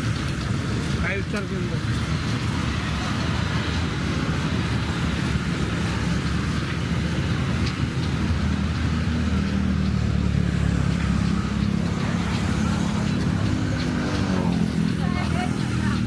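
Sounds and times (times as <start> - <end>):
cars and motorbikes passing: 0.0 - 16.0.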